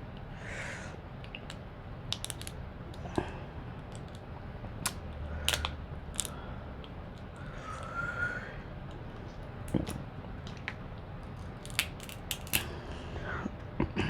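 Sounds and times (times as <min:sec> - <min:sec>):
seafood shells cracking by hand: 0:01.2 - 0:03.2, 0:03.8 - 0:07.9, 0:09.7 - 0:12.7.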